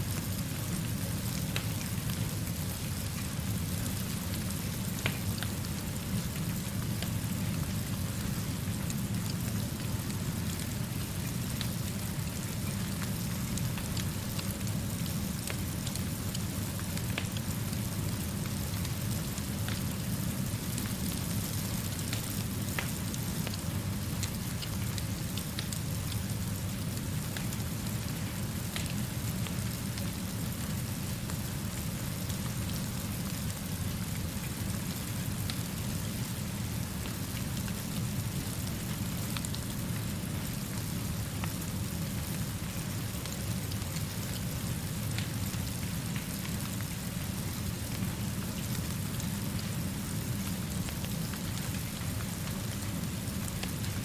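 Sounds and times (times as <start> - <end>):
steady rainfall: 0.0 - 54.0.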